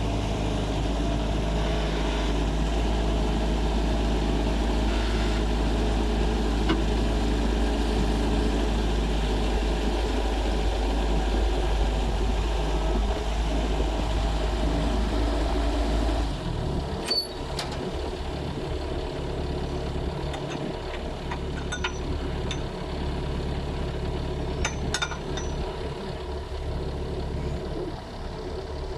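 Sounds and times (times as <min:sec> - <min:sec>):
skid steer engine running: 0:00.0 - 0:28.9
sharp metallic clinks: 0:21.3 - 0:22.8, 0:24.6 - 0:25.7.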